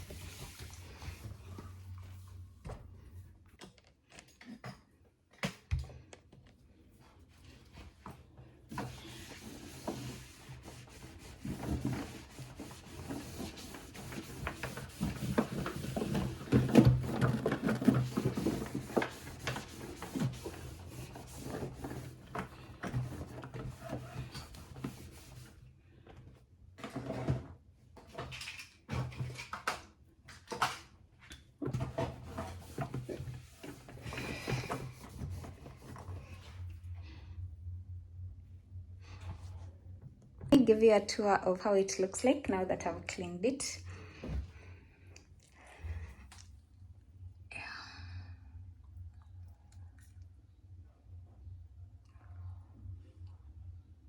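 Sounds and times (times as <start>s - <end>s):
cloth wiping inside refrigerator: 0.0s - 3.2s, 7.0s - 25.6s, 31.8s - 36.6s.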